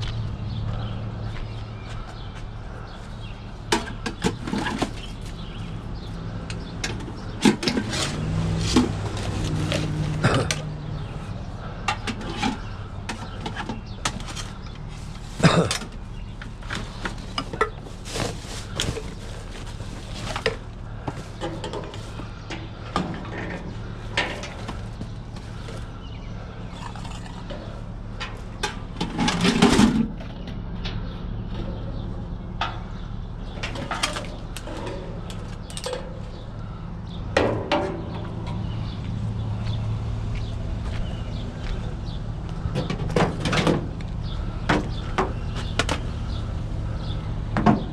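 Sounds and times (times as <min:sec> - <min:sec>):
scrap metal clanking: 0:06.8 - 0:11.1, 0:26.6 - 0:30.2.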